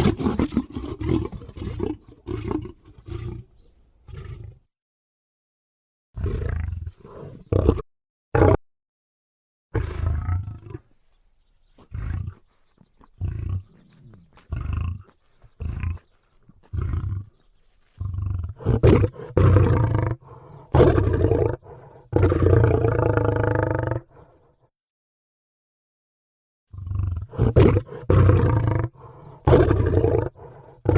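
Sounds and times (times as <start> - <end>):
lion-like roars and growls: 0.0 - 4.7, 6.2 - 7.8, 9.8 - 10.8, 13.2 - 17.4, 18.0 - 24.4, 26.8 - 30.9.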